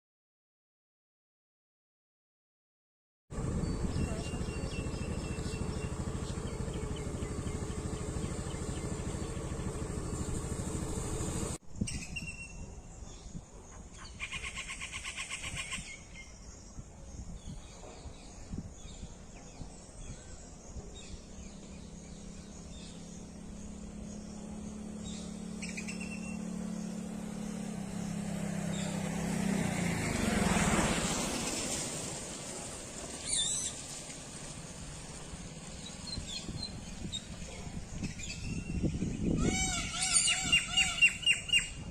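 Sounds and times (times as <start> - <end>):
steady engine hum: 3.3 - 11.6, 18.8 - 41.9
vehicle engine passing: 3.3 - 11.6, 21.0 - 41.8.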